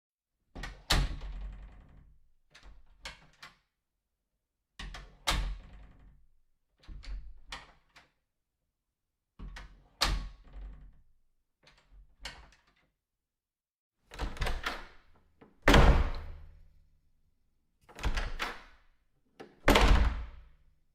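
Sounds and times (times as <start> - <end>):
door sound: 14.1 - 16.6, 17.9 - 18.8, 19.4 - 20.4
door shutting with a thud: 15.6 - 16.5, 19.6 - 20.5
door latch clicks: 18.0 - 18.7.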